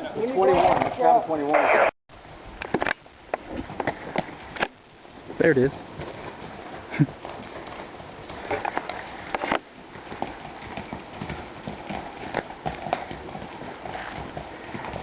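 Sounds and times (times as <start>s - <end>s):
horse hooves clopping: 0.0s - 15.0s.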